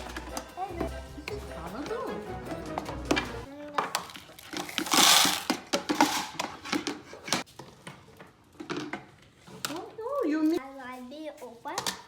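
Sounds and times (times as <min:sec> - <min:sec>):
plastic toys clicking and rattling: 0:03.0 - 0:10.6.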